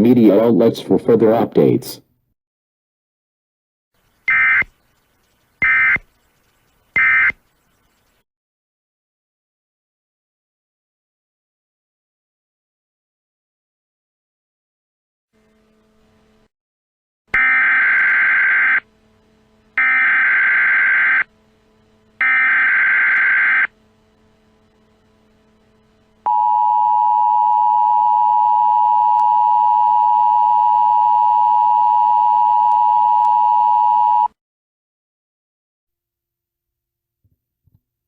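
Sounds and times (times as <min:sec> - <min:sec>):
screeching digital data tones: 0:04.2 - 0:08.0.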